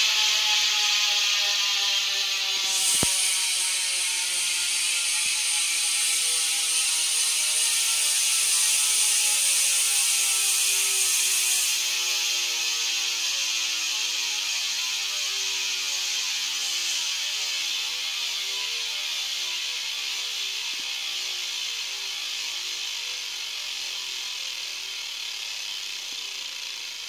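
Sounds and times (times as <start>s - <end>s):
bicycle hub ratcheting buzz: 0.0s - 27.0s.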